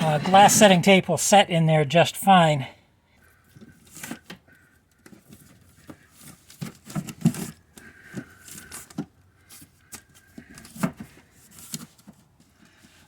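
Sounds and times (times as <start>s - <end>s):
rustling of hand work: 4.9s - 13.0s.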